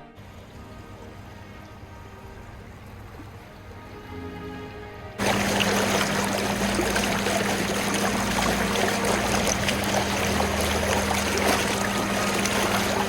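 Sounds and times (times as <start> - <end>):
river water rushing over rapids: 5.2 - 13.0.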